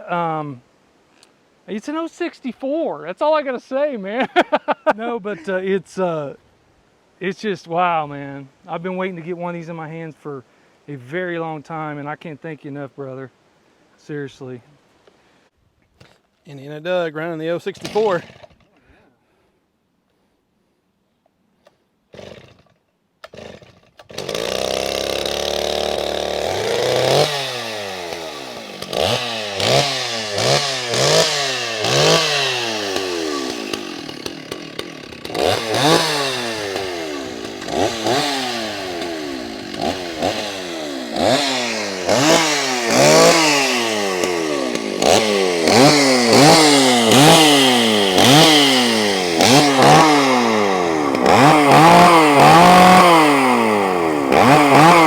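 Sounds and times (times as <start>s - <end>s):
chainsaw revving: 17.8s - 18.6s, 22.1s - 55.0s.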